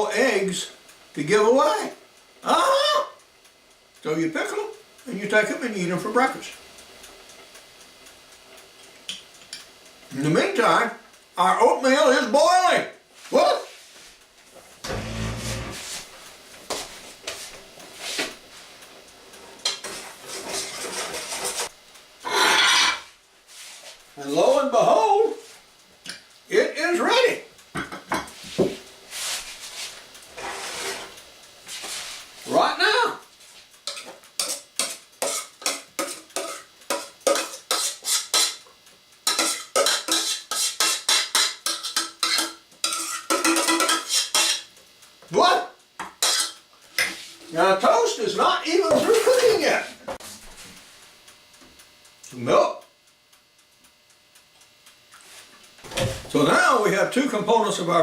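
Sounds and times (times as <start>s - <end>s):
metal spoon scraping a pot: 14.9s - 15.8s, 22.3s - 23.1s, 30.4s - 31.1s, 33.9s - 38.6s, 39.3s - 44.7s, 46.2s - 46.6s.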